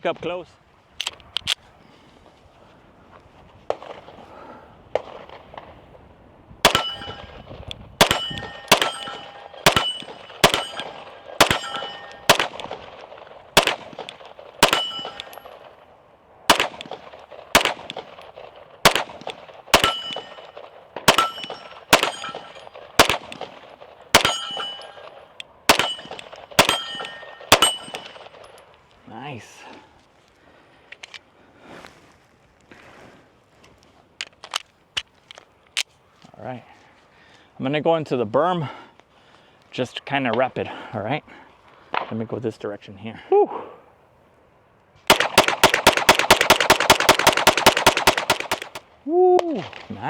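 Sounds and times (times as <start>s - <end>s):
pistol shots: 4.9s - 5.8s, 6.6s - 15.8s, 16.5s - 28.6s, 45.1s - 48.8s
steel plate ringing: 6.7s - 12.4s, 14.6s - 15.5s, 19.8s - 23.4s, 24.2s - 28.6s.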